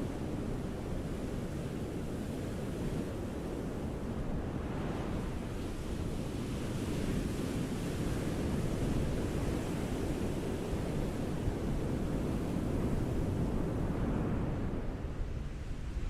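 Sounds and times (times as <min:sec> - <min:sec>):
ocean waves on beach: 0:00.0 - 0:16.0.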